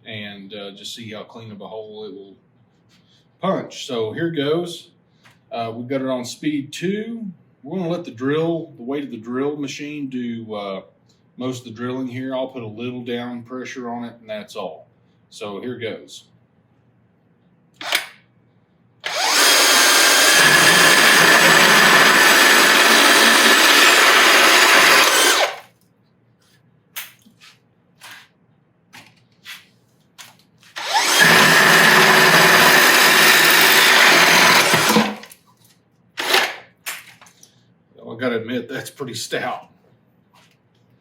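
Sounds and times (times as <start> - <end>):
drill with hole saw cutting wood: 17.8 - 18.2, 19.0 - 25.7, 30.8 - 35.3, 36.2 - 36.6.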